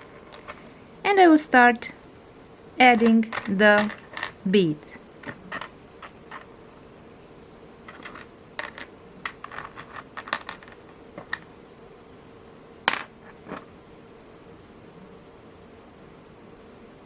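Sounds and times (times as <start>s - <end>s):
beads clicking: 7.8s - 11.5s.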